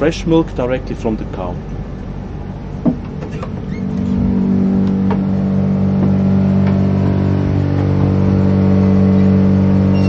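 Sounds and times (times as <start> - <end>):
vending machine motor humming: 1.7 - 10.0.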